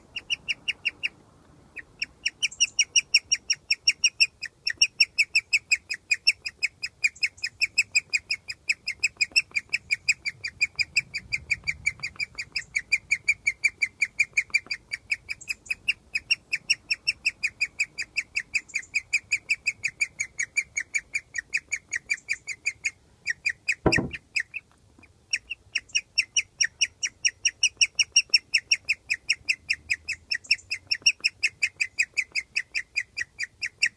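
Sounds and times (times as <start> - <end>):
guinea pig chirping: 0.1 - 1.2, 1.8 - 24.7, 25.3 - 33.9
single knock: 23.8 - 24.2.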